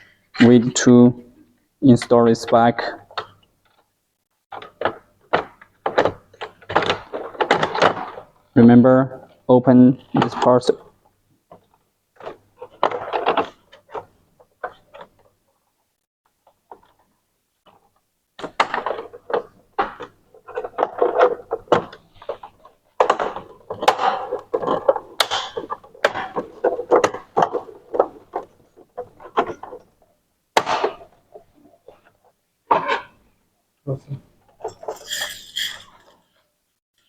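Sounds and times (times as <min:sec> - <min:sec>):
plastic parts clicking and tapping: 0:02.0 - 0:03.9, 0:04.5 - 0:08.6, 0:10.0 - 0:15.4, 0:16.3 - 0:33.2.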